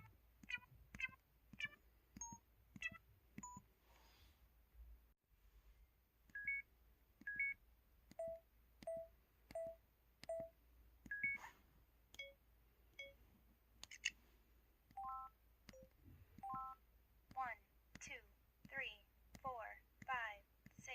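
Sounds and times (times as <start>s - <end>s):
phone keypad beeps: 1.6s - 3.6s, 6.3s - 6.6s, 7.2s - 11.5s, 12.2s - 12.4s, 13.0s - 13.2s, 14.9s - 16.8s
electronic chirp: 6.4s - 6.6s, 7.3s - 7.6s, 8.2s - 10.5s, 11.1s - 11.5s.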